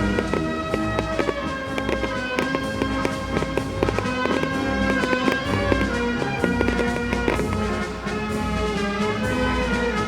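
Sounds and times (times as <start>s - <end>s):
fireworks popping and crackling: 0.0s - 7.9s.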